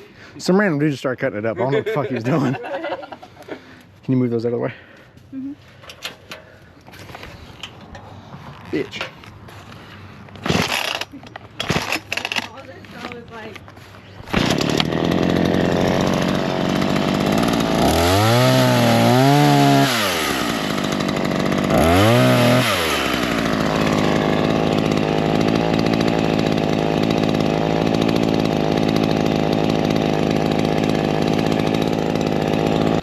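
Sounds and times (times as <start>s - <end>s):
chainsaw revving: 10.3s - 13.2s, 14.2s - 33.0s.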